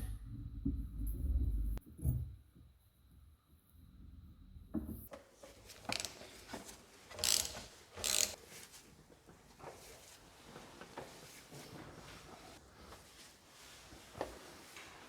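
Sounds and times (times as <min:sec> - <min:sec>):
ratchet wrench clicking: 0:07.2 - 0:08.4.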